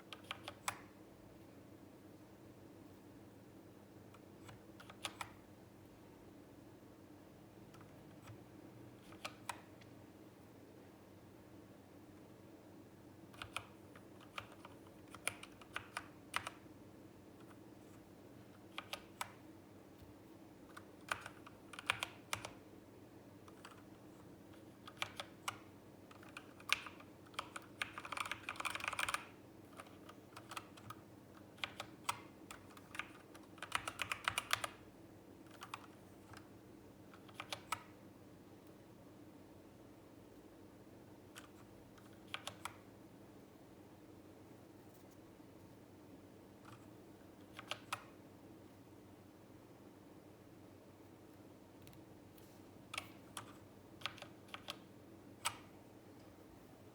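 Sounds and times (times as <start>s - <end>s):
keyboard typing: 0.0s - 1.0s, 4.1s - 5.4s, 7.7s - 9.9s, 13.3s - 16.7s, 17.4s - 19.4s, 20.0s - 22.6s, 23.4s - 34.8s, 35.4s - 36.5s, 37.1s - 38.0s, 41.3s - 42.9s, 46.6s - 48.2s, 52.8s - 55.8s.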